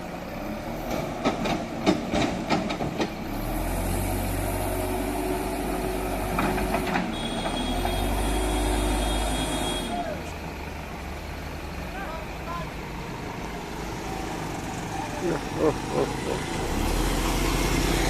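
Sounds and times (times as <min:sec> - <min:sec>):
heavy engine running under load: 0:00.0 - 0:18.0
knocks and clanks: 0:00.9 - 0:03.3.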